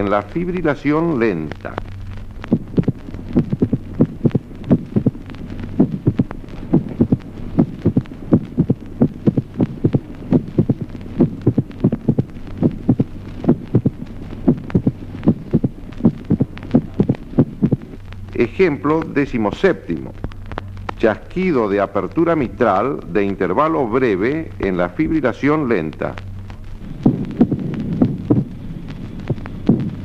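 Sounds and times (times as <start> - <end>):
steady low hum: 0.0 - 30.0
heartbeat sounds: 1.7 - 18.3, 26.2 - 30.0.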